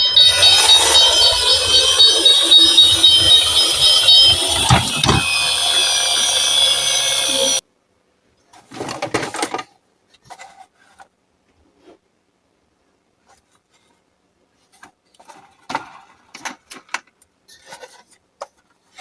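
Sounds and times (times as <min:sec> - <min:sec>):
toy ambulance two-tone siren: 0:00.0 - 0:07.6.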